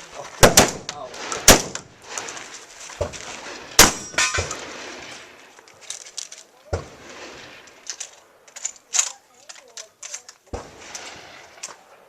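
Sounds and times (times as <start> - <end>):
shotgun shots: 0.4 - 2.2, 3.7 - 5.0
metallic clang of steel targets: 3.8 - 4.7.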